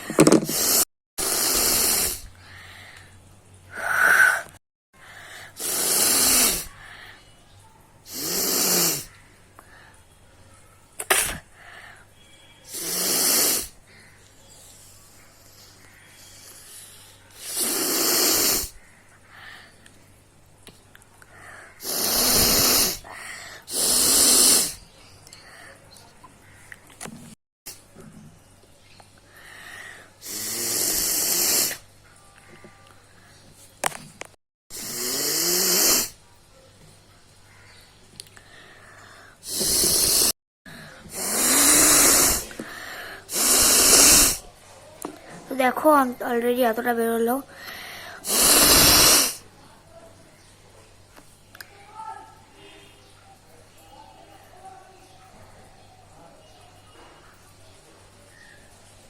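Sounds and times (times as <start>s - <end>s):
person blowing nose: 0.0s - 2.3s, 5.6s - 6.7s, 8.1s - 9.1s, 11.0s - 11.4s, 12.7s - 13.8s, 17.4s - 18.7s, 21.8s - 23.1s, 23.7s - 24.8s, 30.2s - 31.8s, 34.7s - 36.2s, 39.4s - 40.4s, 41.1s - 44.4s, 48.2s - 49.4s
person breathing: 0.0s - 7.3s, 21.3s - 24.8s, 29.3s - 31.4s, 38.4s - 44.4s, 47.5s - 49.4s.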